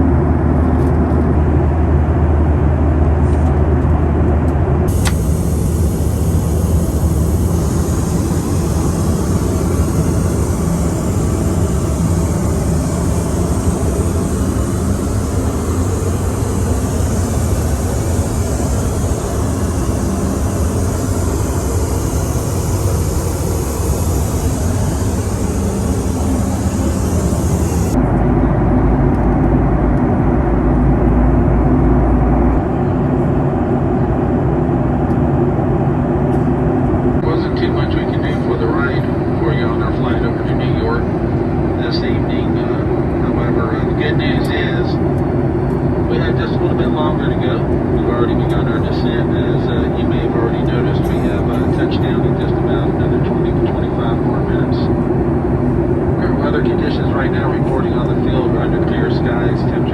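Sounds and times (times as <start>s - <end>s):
jet engines roaring: 4.8s - 59.9s
air rushing past fuselage: 4.9s - 28.2s.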